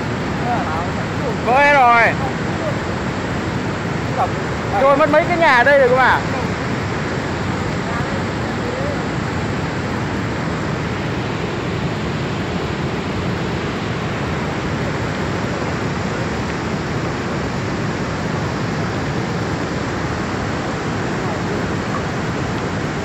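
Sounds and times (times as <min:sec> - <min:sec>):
floodwater rushing: 0:00.0 - 0:23.0.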